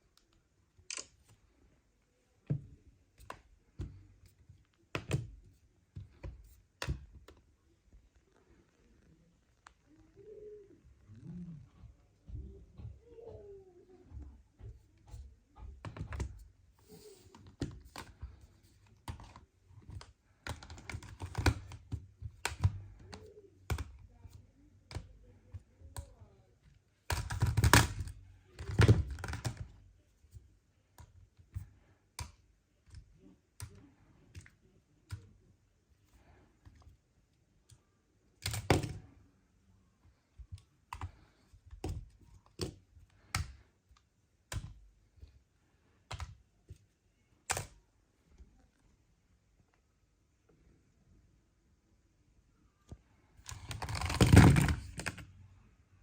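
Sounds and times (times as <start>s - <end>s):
clicks and taps on a surface: 2.4s - 7.5s, 11.7s - 29.8s, 40.0s - 45.4s, 46.0s - 47.8s.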